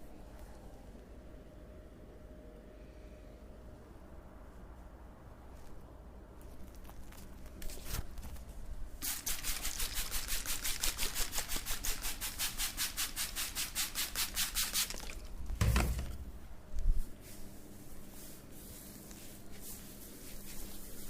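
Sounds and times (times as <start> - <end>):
rubbing strokes on scalp and hair: 9.0 - 15.2, 16.8 - 21.0
dull thump: 15.6 - 16.3.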